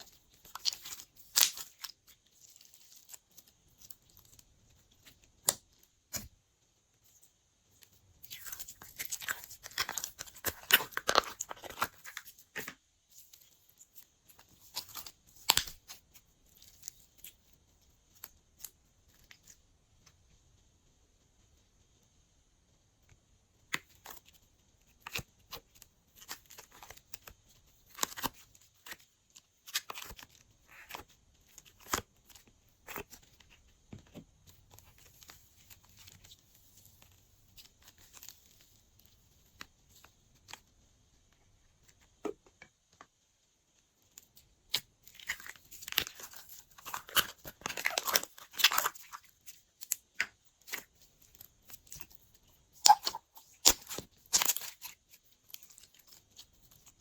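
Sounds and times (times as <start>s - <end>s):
slime squishing with sticky clicks: 44.2s - 57.0s.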